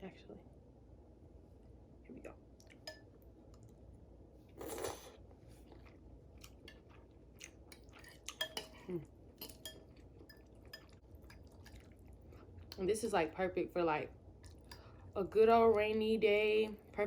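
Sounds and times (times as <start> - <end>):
person chewing: 4.5 - 12.7, 14.4 - 14.9.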